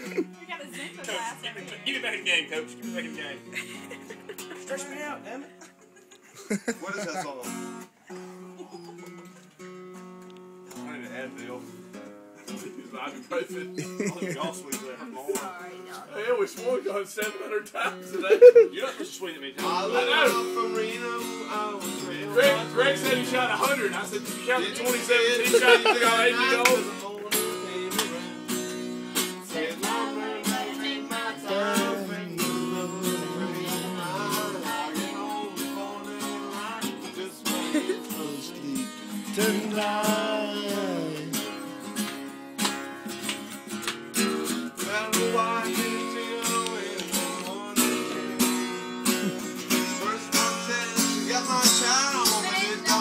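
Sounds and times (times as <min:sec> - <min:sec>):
strummed acoustic guitar: 0:00.0 - 0:53.0
person singing: 0:19.6 - 0:23.5, 0:24.5 - 0:28.5, 0:29.5 - 0:41.7, 0:44.8 - 0:53.0.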